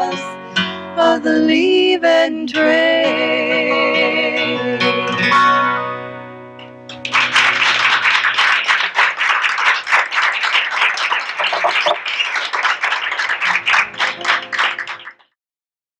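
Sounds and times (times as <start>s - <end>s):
audience clapping: 6.9s - 15.2s.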